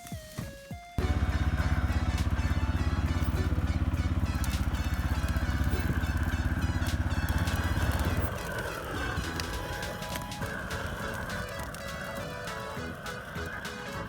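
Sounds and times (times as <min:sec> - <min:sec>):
engine puttering: 0:01.0 - 0:14.0.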